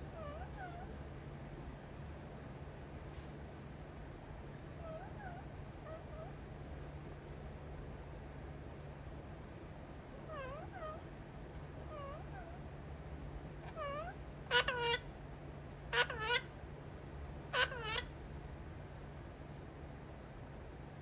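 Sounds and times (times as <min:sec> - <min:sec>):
parrot meow-like calls: 0:00.1 - 0:01.0, 0:04.8 - 0:06.3, 0:10.2 - 0:11.0, 0:11.8 - 0:12.6, 0:13.5 - 0:15.1, 0:15.9 - 0:16.5, 0:17.5 - 0:18.1.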